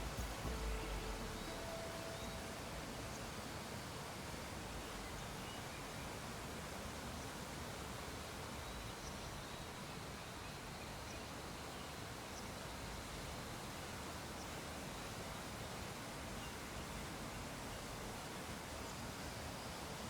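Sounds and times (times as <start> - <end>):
faint high chirps: 0.0 - 3.6
faint background hiss: 0.0 - 20.0.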